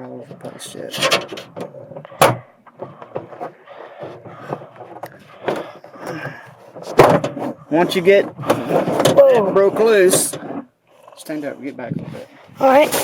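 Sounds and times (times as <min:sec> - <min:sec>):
plastic panel snapping: 0:00.9 - 0:03.5.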